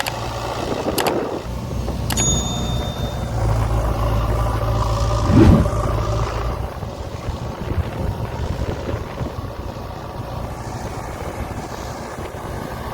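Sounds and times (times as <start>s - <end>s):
diesel engine running: 0.0s - 12.9s
wind noise: 5.1s - 9.5s.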